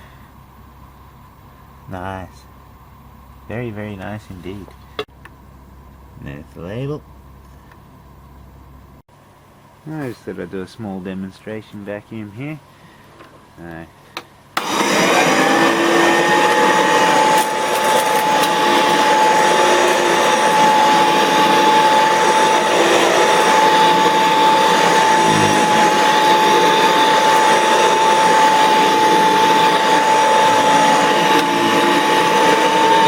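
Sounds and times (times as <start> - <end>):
vacuum cleaner motor whining: 14.6 - 33.0.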